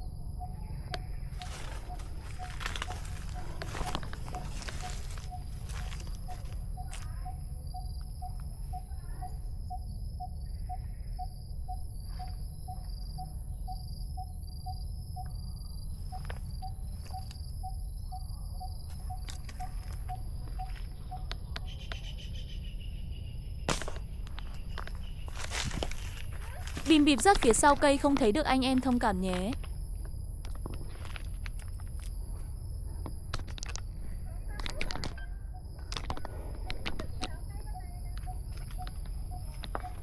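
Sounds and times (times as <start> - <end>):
shrill trilling insect: 0.0 - 40.0
bird deep hooting call: 0.4 - 13.3.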